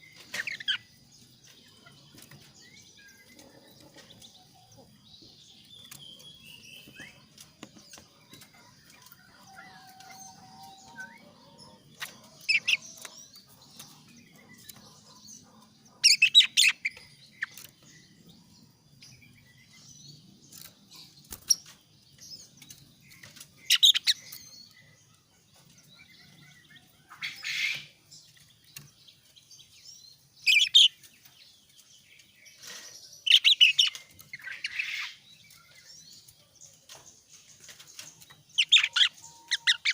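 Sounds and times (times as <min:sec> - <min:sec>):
bird singing high phrases: 0:22.4 - 0:31.4, 0:37.0 - 0:39.9.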